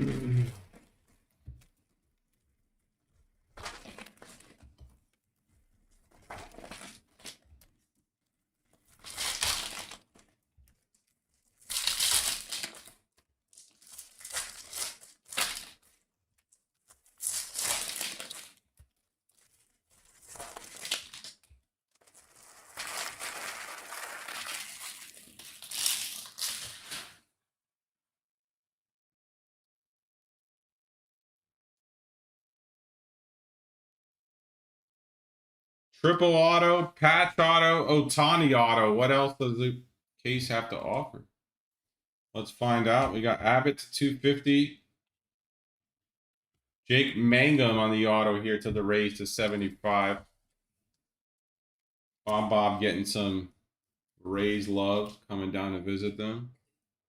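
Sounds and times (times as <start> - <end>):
card pack wrappers tearing and crinkling: 8.9 - 10.3, 11.0 - 16.0, 16.8 - 18.6, 19.3 - 27.2.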